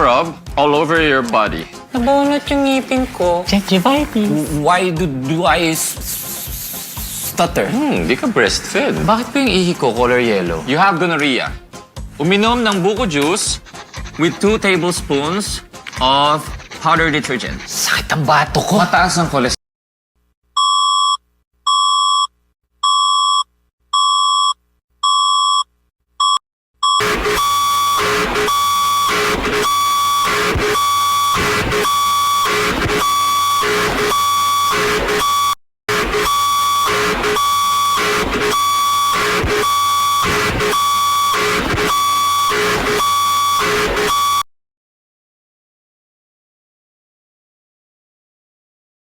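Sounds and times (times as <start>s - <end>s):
high-pitched electronic beeps: 26.3s - 44.4s
harsh pulsing alarm: 26.8s - 44.5s.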